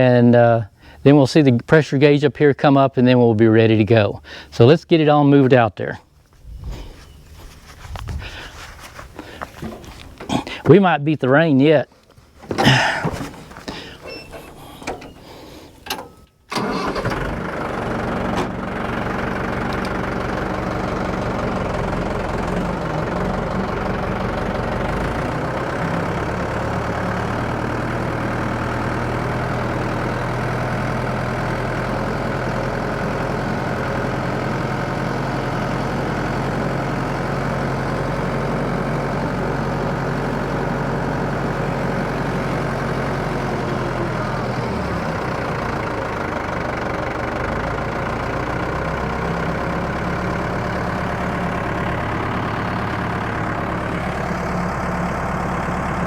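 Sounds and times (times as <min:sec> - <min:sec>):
engine cranking and running: 0:06.9 - 0:10.7, 0:12.3 - 0:56.0.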